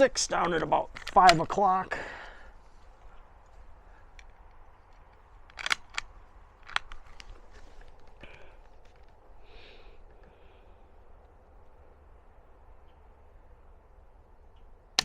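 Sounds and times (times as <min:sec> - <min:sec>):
handling rustle: 0:00.3 - 0:01.8, 0:02.6 - 0:10.3
rifle bolt clicking and clacking: 0:00.4 - 0:01.6, 0:04.1 - 0:09.2.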